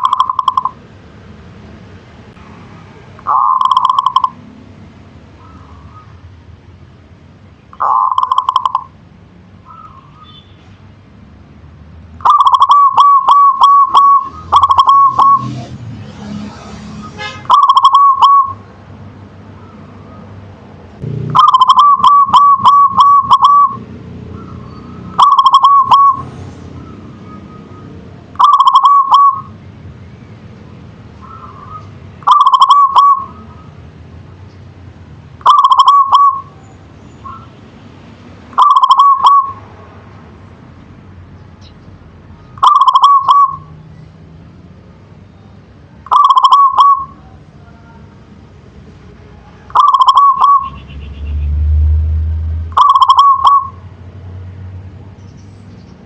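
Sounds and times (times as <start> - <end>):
dove cooing: 0.0 - 0.8, 3.2 - 4.4, 7.8 - 8.9, 12.2 - 15.5, 17.5 - 18.6, 21.3 - 29.5, 31.2 - 33.7, 35.4 - 36.6, 38.6 - 39.6, 42.6 - 43.7, 46.0 - 47.4, 49.7 - 50.8, 52.8 - 53.8.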